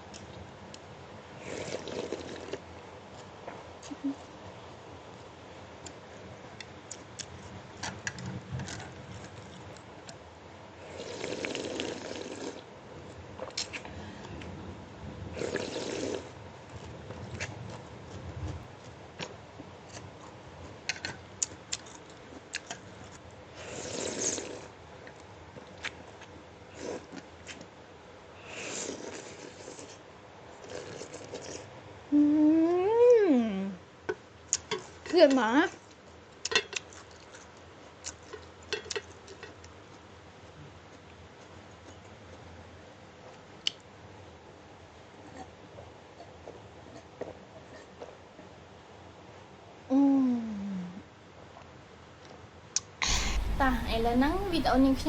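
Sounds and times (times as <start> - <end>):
soft eating noises: 0.0 - 55.0
person slurping noodles and soup: 1.4 - 2.6, 10.9 - 12.6, 15.4 - 16.3, 23.6 - 24.7, 28.5 - 30.0
person humming mmm: 32.1 - 33.8, 49.9 - 51.0.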